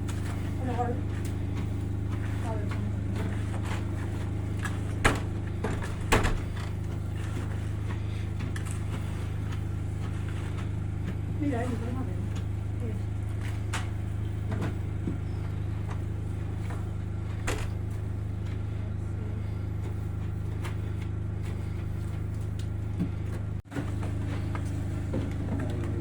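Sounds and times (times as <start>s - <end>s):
motor humming: 0.0s - 26.0s.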